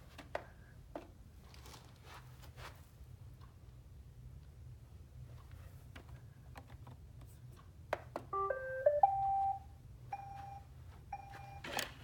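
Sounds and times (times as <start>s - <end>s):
electronic start-up tune: 8.4s - 9.6s
short beeps: 8.4s - 11.6s.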